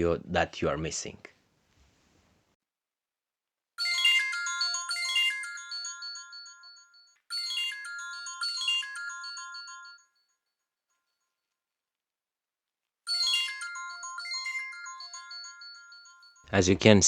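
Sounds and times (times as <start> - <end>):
phone ringtone chiming melody: 3.8 - 10.5, 13.1 - 16.6.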